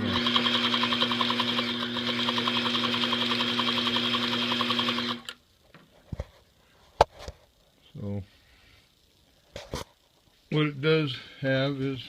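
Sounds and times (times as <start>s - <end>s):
sewing machine running: 0.0s - 5.4s.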